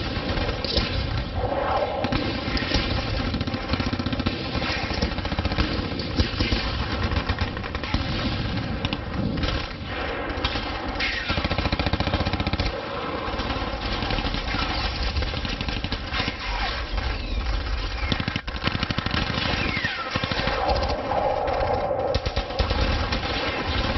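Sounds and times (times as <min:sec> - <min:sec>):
rapid automatic gunfire: 0:00.0 - 0:01.3, 0:02.0 - 0:23.9
low rumble: 0:01.1 - 0:03.7, 0:20.4 - 0:23.9.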